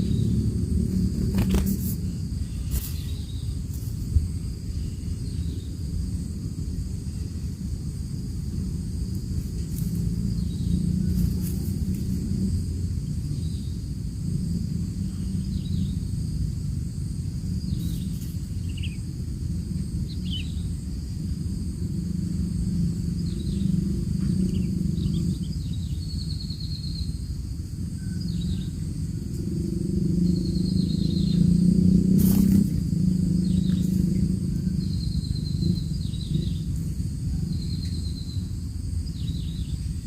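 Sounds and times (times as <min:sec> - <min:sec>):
insect drone: 0:00.0 - 0:40.0
bird chirps: 0:17.6 - 0:19.0, 0:20.1 - 0:20.7.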